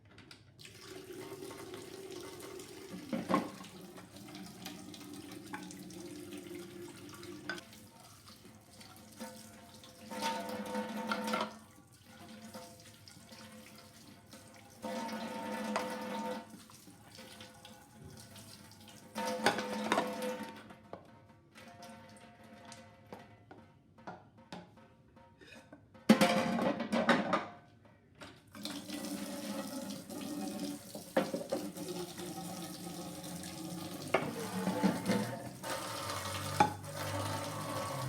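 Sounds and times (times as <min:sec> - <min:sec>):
tap water running into sink: 0:00.6 - 0:20.5, 0:28.5 - 0:38.0.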